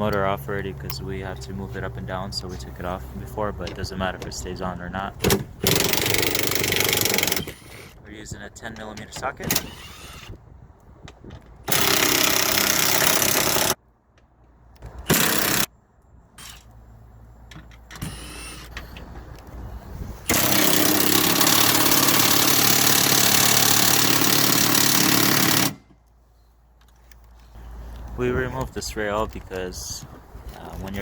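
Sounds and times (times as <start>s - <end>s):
power tool turning a socket: 5.3s - 8.0s, 9.5s - 10.4s, 11.7s - 13.8s, 15.0s - 15.7s, 20.3s - 25.9s.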